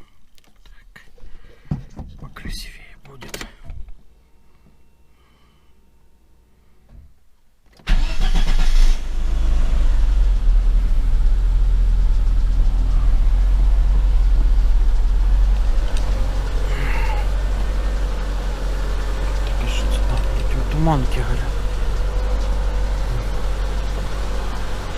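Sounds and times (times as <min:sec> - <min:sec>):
petrol engine starting and idling: 0:07.8 - 0:24.9.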